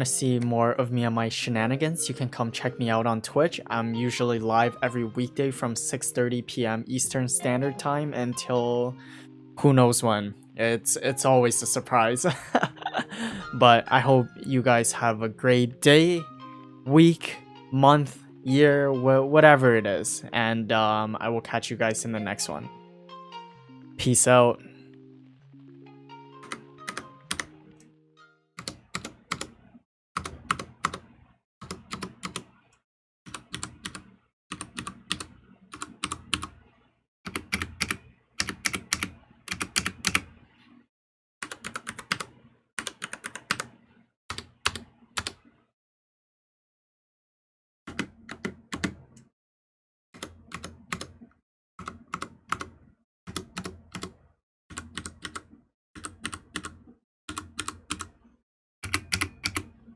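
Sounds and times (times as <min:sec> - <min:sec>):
mechanical keyboard typing: 0:26.4 - 0:27.6, 0:28.6 - 0:29.6, 0:30.2 - 0:32.6, 0:33.3 - 0:36.6, 0:37.3 - 0:40.3, 0:41.4 - 0:45.4, 0:47.9 - 0:49.0, 0:50.2 - 0:51.2, 0:51.8 - 0:58.2, 0:58.8 - 0:59.7.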